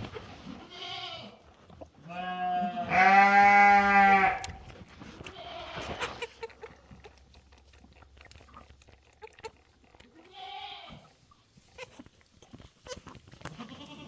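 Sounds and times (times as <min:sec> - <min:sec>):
baby goat bleating: 0:00.6 - 0:01.4, 0:02.1 - 0:04.5, 0:05.2 - 0:06.5, 0:10.2 - 0:11.1, 0:12.8 - 0:14.0
sucking on feeding bottle: 0:04.4 - 0:14.0.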